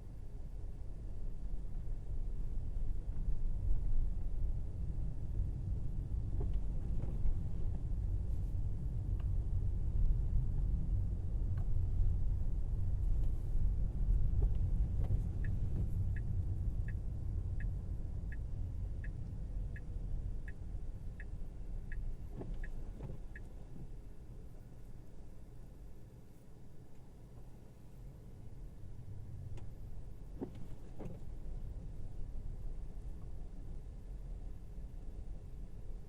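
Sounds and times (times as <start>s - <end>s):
road and tyre rumble in car: 0.0s - 36.0s
turn signal ticking: 14.3s - 24.6s.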